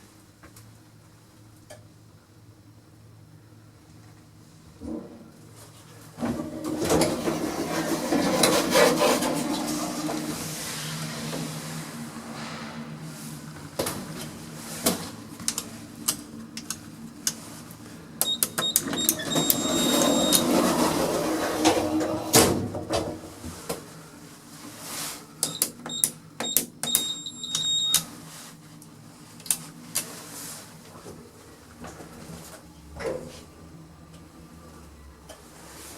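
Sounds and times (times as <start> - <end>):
rush of noise: 10.3 - 14.7.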